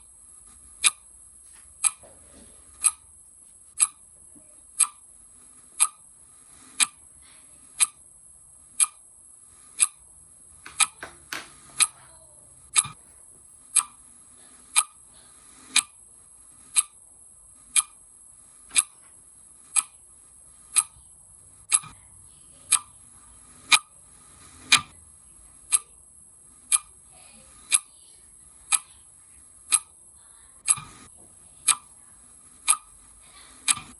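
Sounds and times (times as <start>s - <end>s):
clock ticking: 0.7s - 1.1s, 1.8s - 2.1s, 2.7s - 5.1s, 5.7s - 8.1s, 8.7s - 13.0s, 13.7s - 17.0s, 17.7s - 18.0s, 18.6s - 19.0s, 19.6s - 21.0s, 21.6s - 25.0s, 25.6s - 28.0s, 28.6s - 29.0s, 29.6s - 30.0s, 30.6s - 32.0s, 32.6s - 33.9s.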